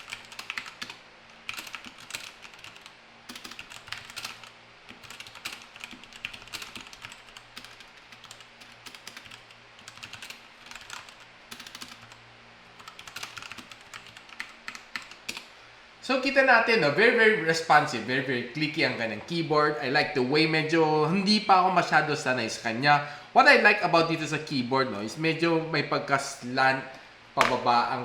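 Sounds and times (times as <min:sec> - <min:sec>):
clicky mechanical keyboard typing: 0:00.0 - 0:12.2, 0:12.8 - 0:15.5.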